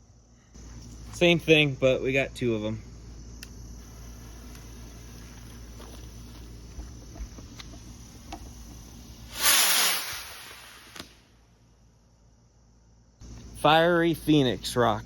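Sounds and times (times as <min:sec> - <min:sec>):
crickets chirring: 0:00.0 - 0:15.0
firework rocket hissing whoosh: 0:03.8 - 0:06.6, 0:08.0 - 0:11.4
firework pop: 0:09.3 - 0:11.3.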